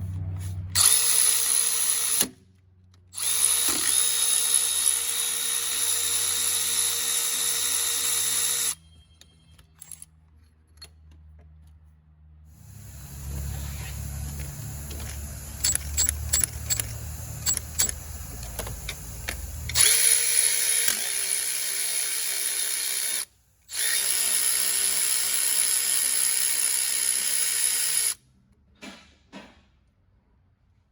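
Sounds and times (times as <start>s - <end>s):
electric ratchet motor running: 0.8s - 2.3s, 3.2s - 8.8s, 12.6s - 28.2s
sharp metallic clicks: 14.8s - 20.2s.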